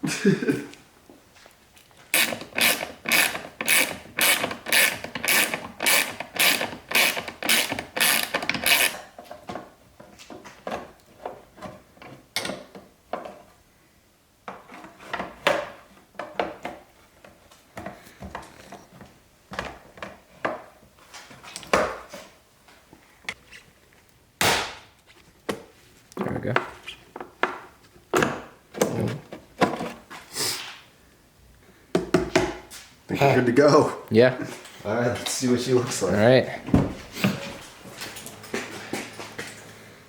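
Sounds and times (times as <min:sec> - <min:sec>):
small parts rubbing: 0:02.1 - 0:09.1
ratchet clicking: 0:02.2 - 0:09.0.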